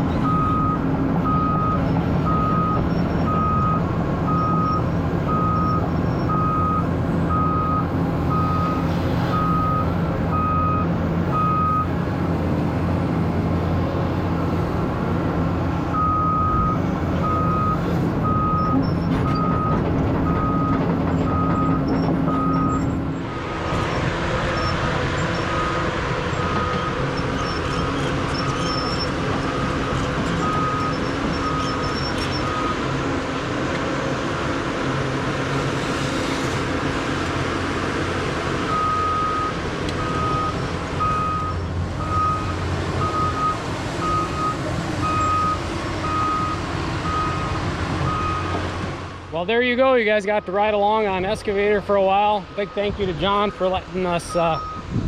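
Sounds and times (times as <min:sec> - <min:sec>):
excavator diesel engine running: 0:00.0 - 0:55.0
backup alarm beeping: 0:54.2 - 0:54.8.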